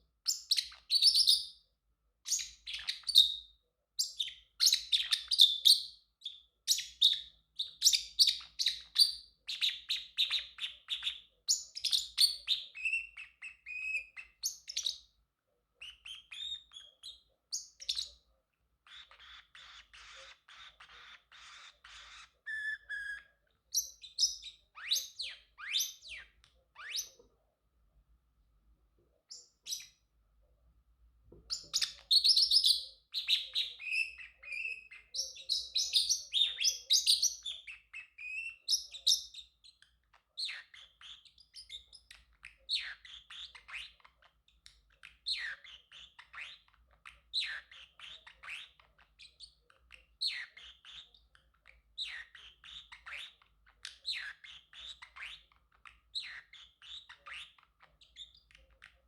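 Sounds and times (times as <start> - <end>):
parrotlet chirping: 0.2 - 15.2, 15.8 - 27.3, 29.1 - 30.1, 31.3 - 59.0.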